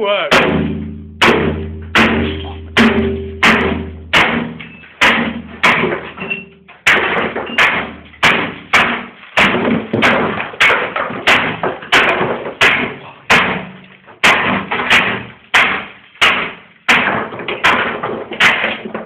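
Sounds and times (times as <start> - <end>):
heavy blows with rattling ring: 0.3 - 6.2.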